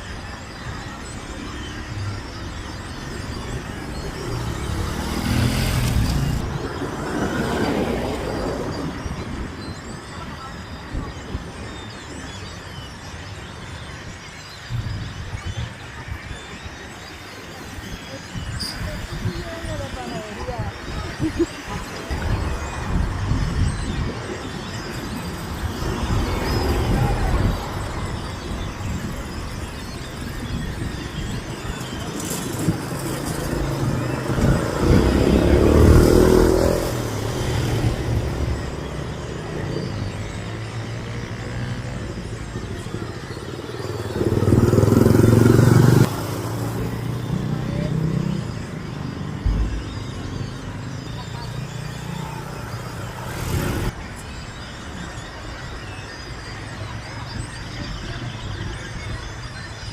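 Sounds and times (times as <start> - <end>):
small birds chirping: 0.0 - 59.9
vehicle engine passing: 4.2 - 8.3, 32.7 - 39.9.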